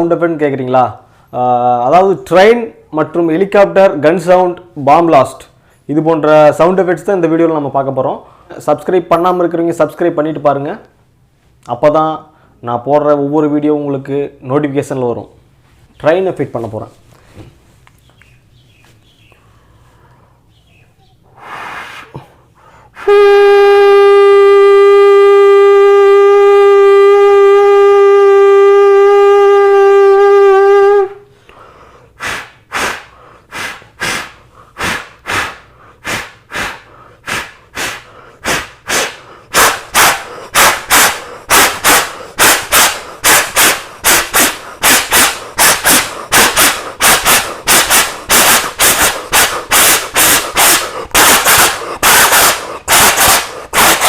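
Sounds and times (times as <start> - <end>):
voice imitating train whistle: 23.0 - 31.3, 32.2 - 54.0
voice imitating chugging puffs: 32.2 - 54.0.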